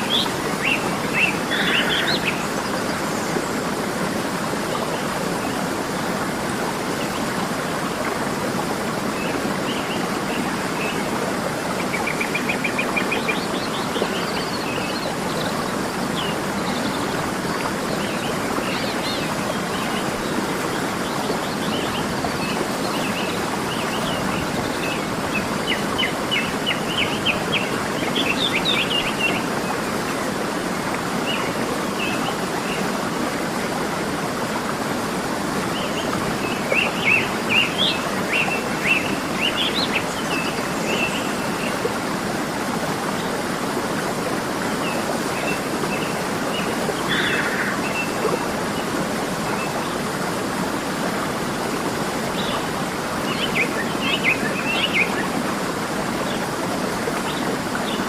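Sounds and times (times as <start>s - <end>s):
birds chirping and trilling: 0.0s - 3.0s, 46.6s - 48.4s
waterfall rushing: 0.0s - 58.0s.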